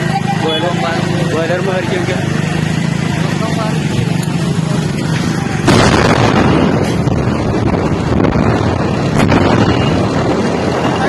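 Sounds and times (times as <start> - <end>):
steady rushing noise: 0.8 - 11.0
explosion: 5.6 - 11.0.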